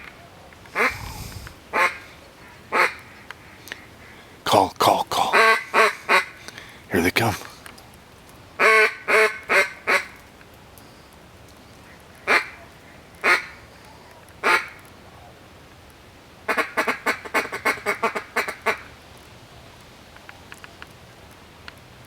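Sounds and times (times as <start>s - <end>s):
duck call quacks: 0.8s - 1.0s, 1.7s - 2.0s, 2.7s - 3.0s, 5.3s - 6.4s, 8.6s - 10.2s, 12.3s - 12.6s, 13.2s - 13.6s, 14.4s - 14.8s, 16.5s - 18.8s.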